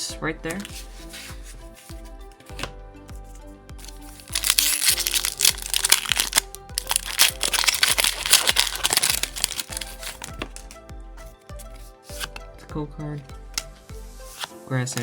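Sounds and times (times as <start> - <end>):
background music: 0.0 - 15.0
foil wrapper crinkling and tearing: 3.8 - 10.7.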